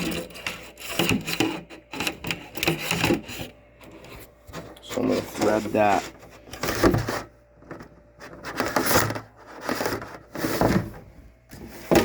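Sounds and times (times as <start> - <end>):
wire scraping through metal hole: 0.0 - 7.2.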